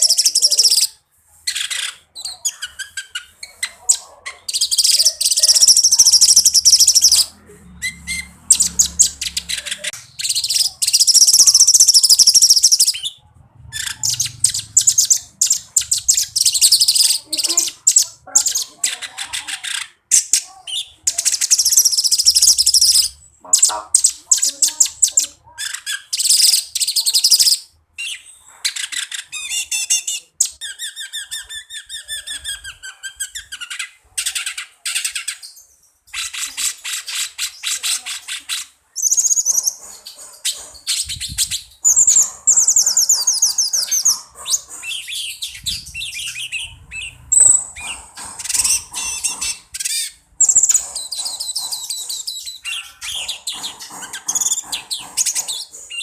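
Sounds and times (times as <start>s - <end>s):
songbird trilling: 4.4s - 13.2s, 13.8s - 19.8s, 39.0s - 56.0s.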